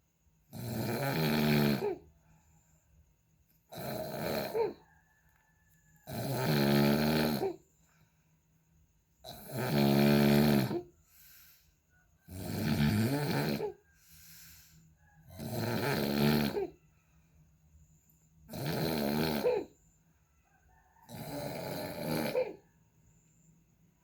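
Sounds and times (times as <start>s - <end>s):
person snoring loudly: 0.5s - 2.0s, 3.7s - 4.8s, 6.0s - 7.6s, 9.2s - 11.0s, 12.2s - 13.8s, 15.2s - 16.8s, 18.5s - 19.8s, 21.0s - 22.6s
soft breathing: 11.0s - 12.1s, 13.8s - 15.2s.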